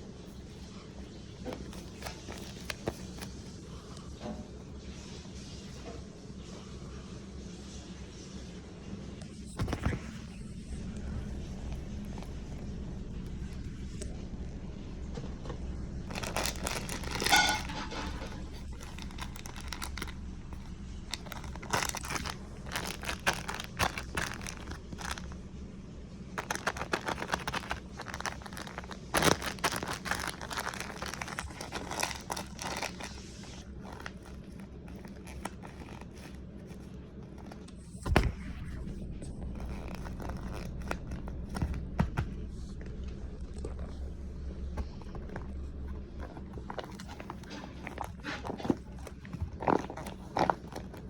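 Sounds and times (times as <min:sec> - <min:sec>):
low steady hum: 0:00.0 - 0:51.0
packaging crinkling: 0:01.4 - 0:03.5, 0:16.1 - 0:25.4, 0:26.3 - 0:37.7, 0:39.4 - 0:42.6, 0:44.8 - 0:51.0.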